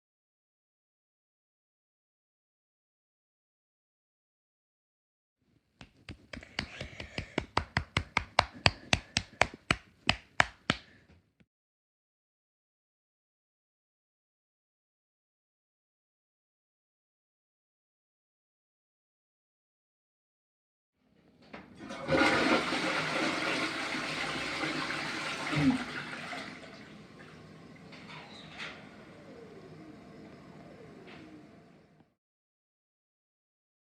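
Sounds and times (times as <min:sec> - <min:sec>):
rushing water: 0:21.9 - 0:27.2.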